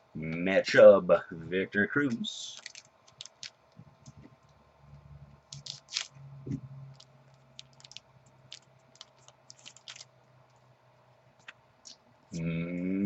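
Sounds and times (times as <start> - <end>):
faint low hum: 0.0 - 13.0
foil wrapper crinkling: 2.1 - 4.2, 5.4 - 6.2, 6.9 - 10.7.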